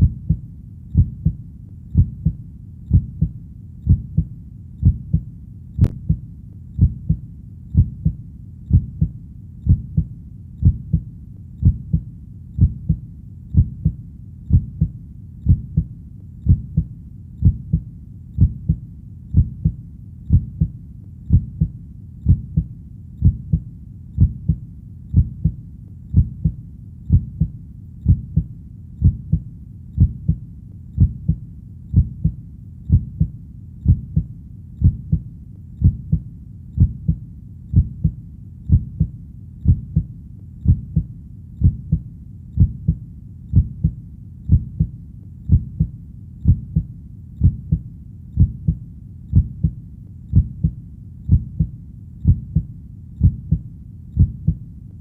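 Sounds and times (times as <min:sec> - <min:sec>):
heartbeat double thump: 0:00.0 - 0:01.4, 0:02.0 - 0:05.2, 0:05.8 - 0:06.2, 0:06.8 - 0:07.2, 0:07.8 - 0:09.1, 0:09.7 - 0:11.0, 0:11.6 - 0:12.0, 0:12.6 - 0:13.0, 0:13.6 - 0:17.8, 0:21.3 - 0:21.7, 0:22.3 - 0:23.6, 0:24.2 - 0:29.4, 0:31.0 - 0:35.2, 0:35.8 - 0:36.2, 0:36.8 - 0:42.0, 0:42.6 - 0:44.9, 0:45.5 - 0:47.8, 0:48.4 - 0:53.6, 0:54.2 - 0:54.6.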